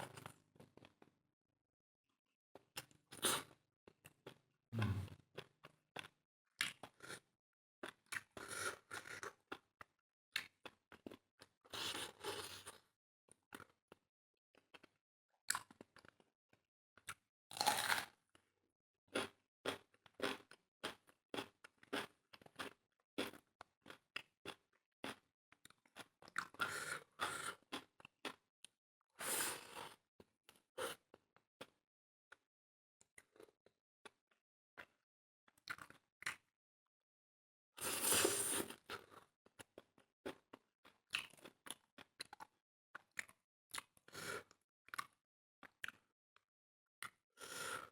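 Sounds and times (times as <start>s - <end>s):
wet mouth clicks of chewing: 39.7s - 44.0s, 44.9s - 46.0s.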